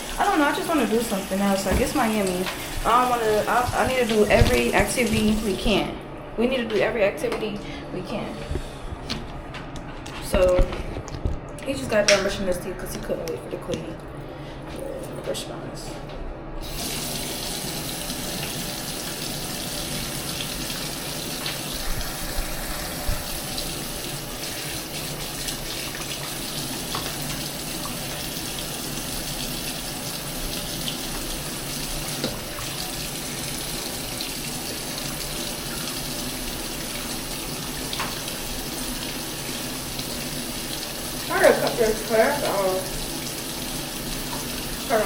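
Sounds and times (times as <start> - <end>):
tap water splashing into basin: 1.6 - 5.5, 24.7 - 28.7, 32.0 - 33.5, 36.9 - 38.4.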